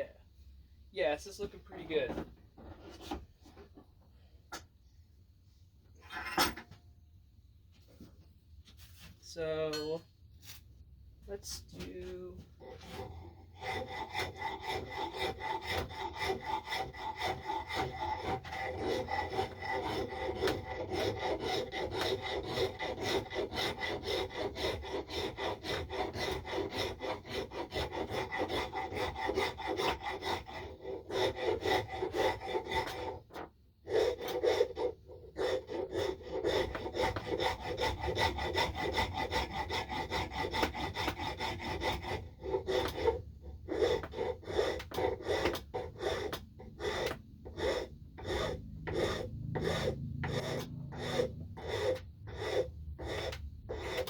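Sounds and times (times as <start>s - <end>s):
file rasping on wood: 11.8s - 54.0s.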